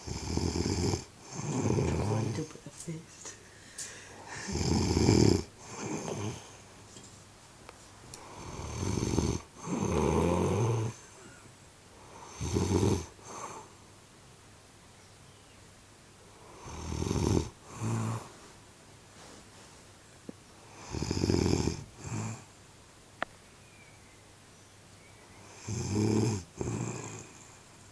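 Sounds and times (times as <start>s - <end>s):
woman snoring with gargling rattle: 0.0s - 2.5s, 4.3s - 6.5s, 8.2s - 11.0s, 12.1s - 13.6s, 16.5s - 18.3s, 20.7s - 22.5s, 25.5s - 27.6s.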